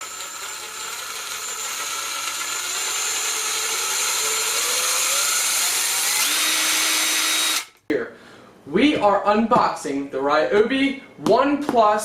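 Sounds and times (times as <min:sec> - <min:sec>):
power tool motor whining: 0:00.0 - 0:07.8.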